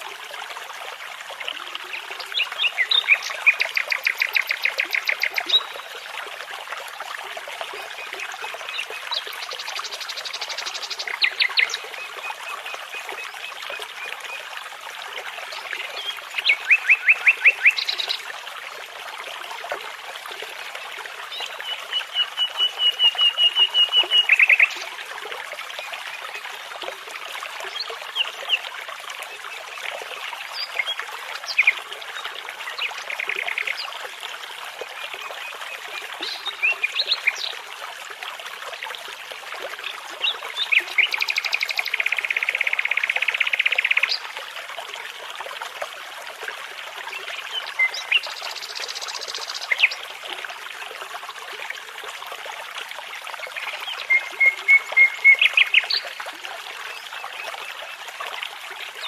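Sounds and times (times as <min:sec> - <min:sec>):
brook babbling: 0:00.0 - 0:59.0
songbirds singing: 0:01.9 - 0:05.9.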